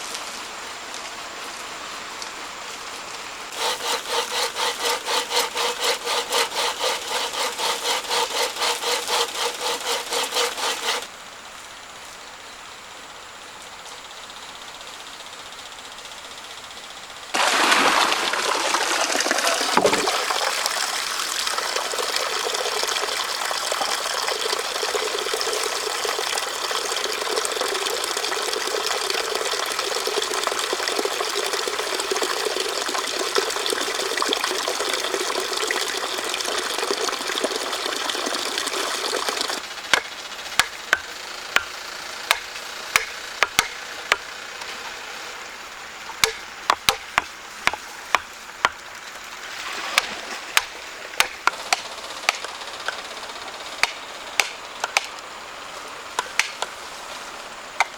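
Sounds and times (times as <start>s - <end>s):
water rushing: 3.5s - 11.1s, 17.4s - 39.6s, 45.4s - 52.8s
sharp knocks: 42.3s - 44.3s, 46.2s - 48.8s.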